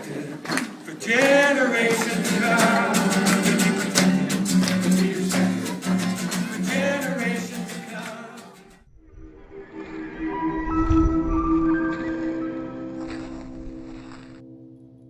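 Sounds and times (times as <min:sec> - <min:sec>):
person singing: 0:00.0 - 0:08.6
strummed acoustic guitar: 0:01.0 - 0:08.8.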